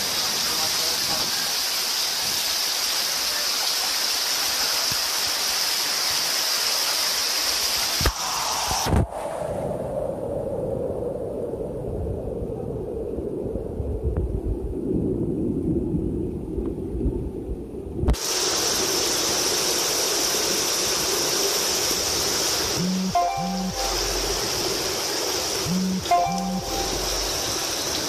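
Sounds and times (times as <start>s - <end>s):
rushing floodwater: 0.0s - 9.0s, 18.2s - 28.0s
heavy rain: 0.0s - 9.1s, 18.1s - 28.0s.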